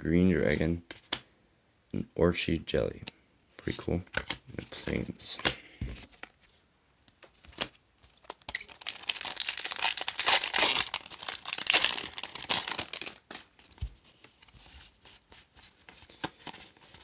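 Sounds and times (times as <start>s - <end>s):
foil wrapper tearing and crinkling: 8.1s - 13.8s.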